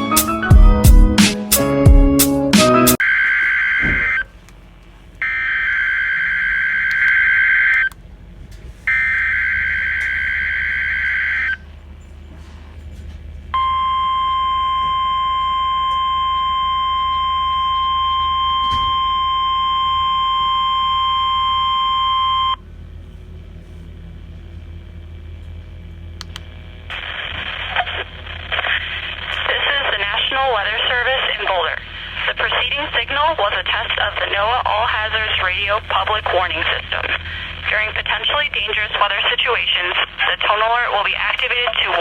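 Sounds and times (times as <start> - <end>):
steady warning alarm tone: 3.0 - 4.3, 5.2 - 8.0, 8.9 - 11.7, 13.5 - 22.6.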